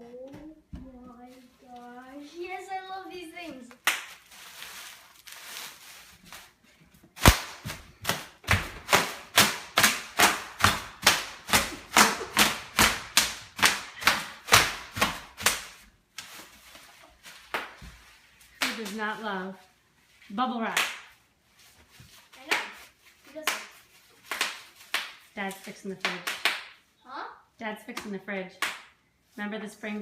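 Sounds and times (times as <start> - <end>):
bubble wrap popping: 3.7 - 6.6, 7.2 - 17.9.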